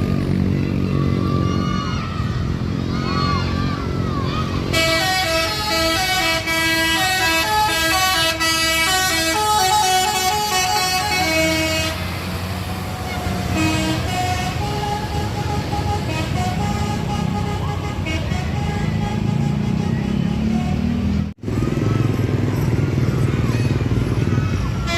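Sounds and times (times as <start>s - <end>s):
bus engine rumble: 0.0s - 24.9s
multi-note bus horn tune: 4.7s - 12.4s, 13.4s - 21.2s.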